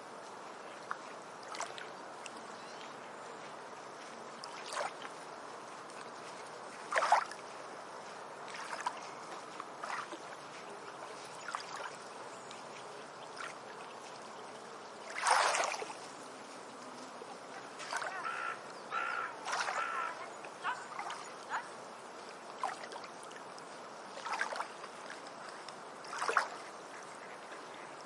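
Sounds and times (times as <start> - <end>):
water splashes: 0.0 - 2.9, 3.9 - 28.0
trickle of water: 0.1 - 28.0
bird warbling calls: 18.0 - 21.7.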